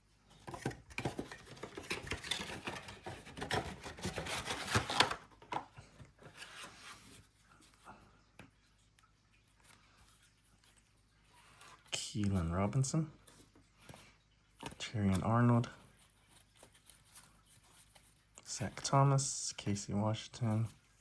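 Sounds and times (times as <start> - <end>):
cards and cardboard rubbing: 0.5 - 5.2, 14.6 - 19.2.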